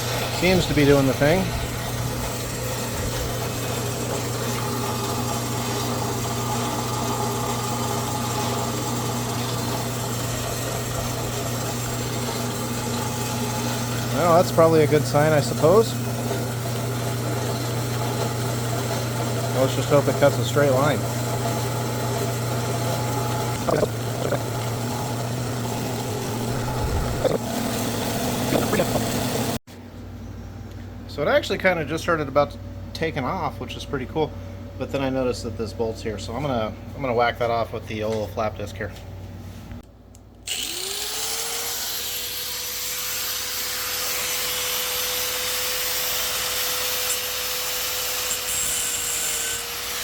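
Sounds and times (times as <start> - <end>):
machine saw cutting steel tubing: 0.0 - 29.6, 40.5 - 50.0.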